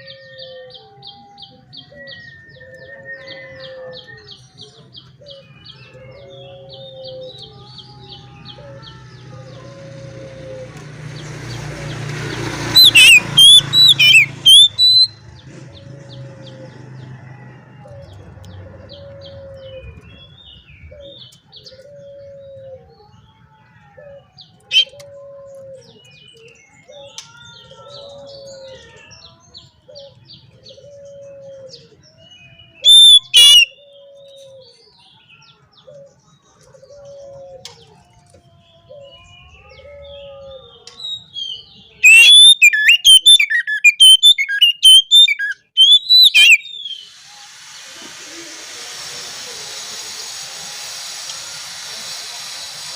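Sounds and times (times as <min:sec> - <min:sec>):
bird singing whistled phrases: 0:12.7 - 0:15.2, 0:24.7 - 0:25.0, 0:32.2 - 0:34.0, 0:41.0 - 0:47.2
soft bird chirps: 0:12.7 - 0:15.2, 0:32.4 - 0:34.5, 0:41.2 - 0:47.2.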